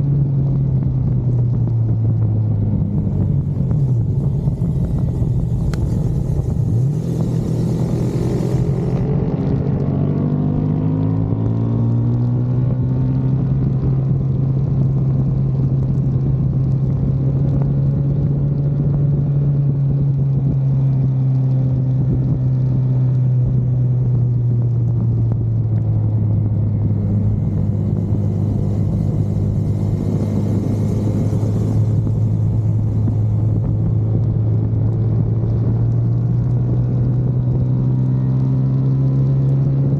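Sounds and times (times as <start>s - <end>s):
car engine droning: 0.0s - 39.9s
hiss: 4.1s - 9.0s, 27.2s - 33.6s.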